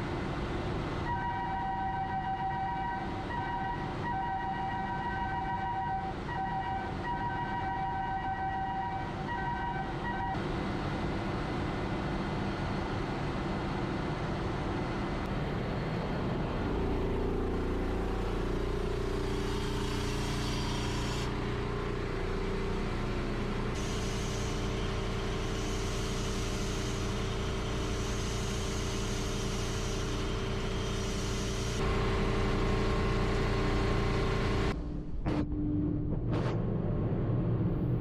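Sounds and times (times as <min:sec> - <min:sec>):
engine room machinery drone: 0:00.0 - 0:38.0
deep steady hum: 0:29.8 - 0:38.0.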